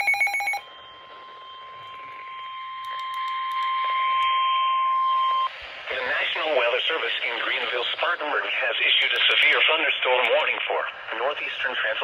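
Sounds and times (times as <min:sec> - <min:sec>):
steady high alert beep: 0:00.0 - 0:02.0.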